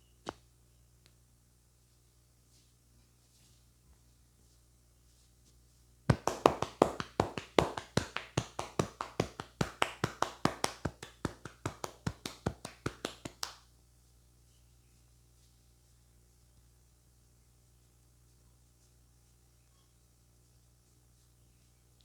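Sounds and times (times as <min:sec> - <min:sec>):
hands slapping head: 0:06.1 - 0:13.6.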